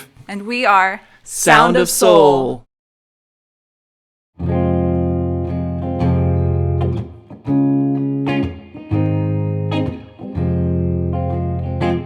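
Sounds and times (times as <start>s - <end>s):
guitar chords ringing: 4.4s - 12.0s.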